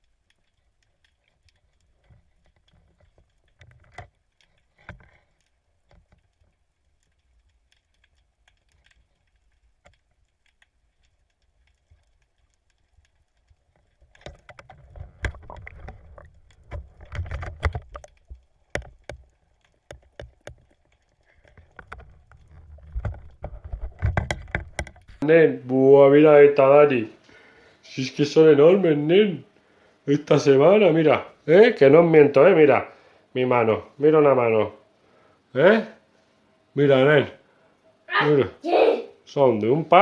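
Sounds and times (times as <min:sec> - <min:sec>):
water splashing and sloshing: 0:00.0 - 0:25.2
faint clicking and crackling: 0:00.0 - 0:38.1, 0:39.2 - 0:40.0.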